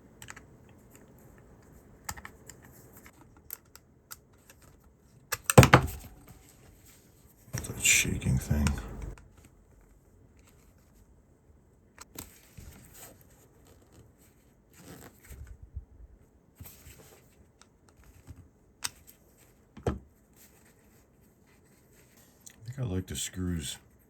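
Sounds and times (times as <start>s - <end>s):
soft rustling and scraping: 20.2s - 22.5s.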